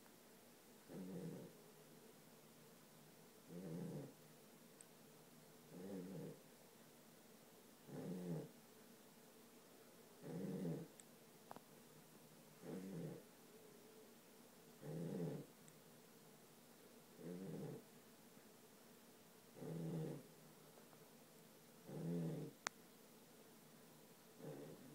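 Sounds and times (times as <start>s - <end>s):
puppy snoring: 0.9s - 1.6s, 3.5s - 4.2s, 5.7s - 6.4s, 7.8s - 8.6s, 10.2s - 11.0s, 12.6s - 13.3s, 14.8s - 15.5s, 17.2s - 17.9s, 19.6s - 20.3s, 21.8s - 22.6s, 24.4s - 24.9s.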